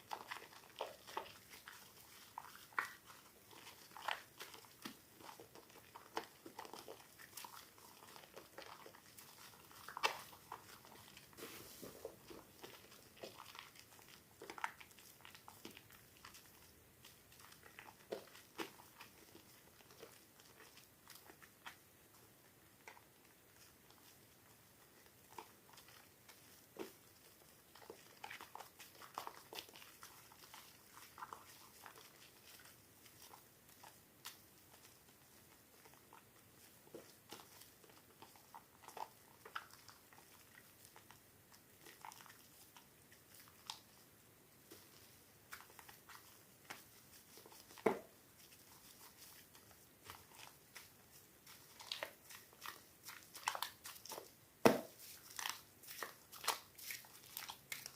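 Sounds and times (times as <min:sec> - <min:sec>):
wet soap crackling and squishing: 0:00.0 - 0:57.9
soap cracking: 0:00.1 - 0:11.1, 0:44.7 - 0:57.9.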